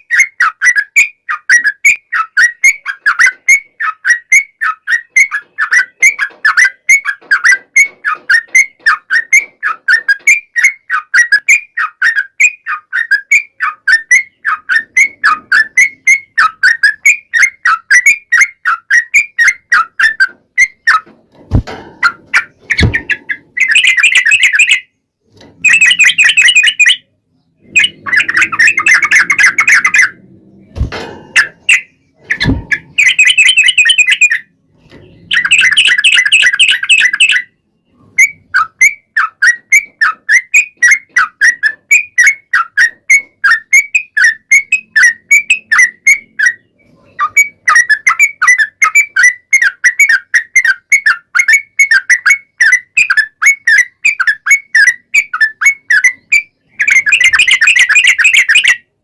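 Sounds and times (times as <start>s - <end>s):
bird singing chattering song: 0.0s - 21.1s, 22.0s - 58.9s
low thumps: 21.3s - 23.6s, 29.6s - 33.0s.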